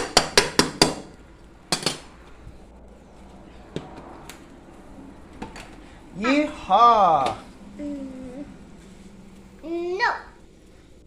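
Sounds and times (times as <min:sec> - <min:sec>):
pots and utensils clinking: 0:01.7 - 0:02.1.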